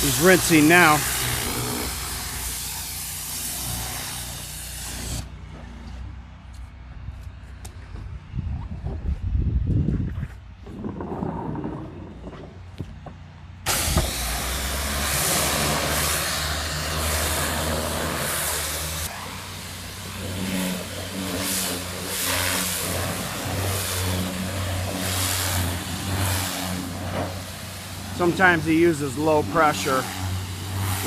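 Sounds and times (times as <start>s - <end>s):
high-pressure spray hissing: 0.0s - 5.3s, 13.7s - 31.0s
pressure washer engine running: 0.0s - 6.2s, 13.5s - 31.0s.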